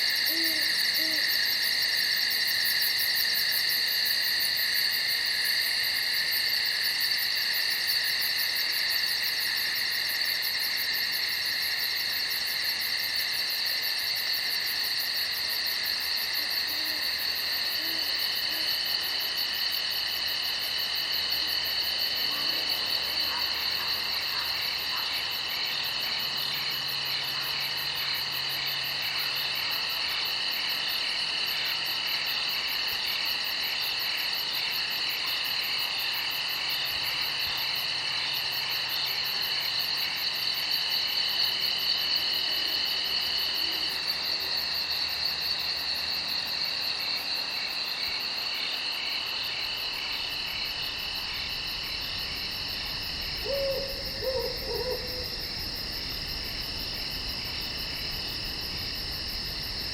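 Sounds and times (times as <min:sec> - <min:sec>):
crickets chirping: 0:00.0 - 0:59.9.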